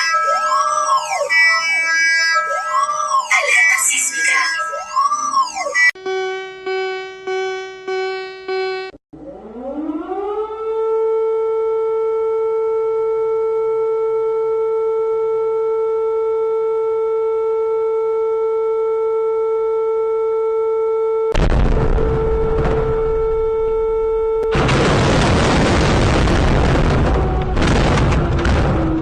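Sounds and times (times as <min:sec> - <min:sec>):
buzzy alarm tone beeping: 0:00.0 - 0:09.0, 0:22.1 - 0:24.5
siren-like rising tone: 0:00.0 - 0:24.6
loud crackling noise burst: 0:21.4 - 0:29.0.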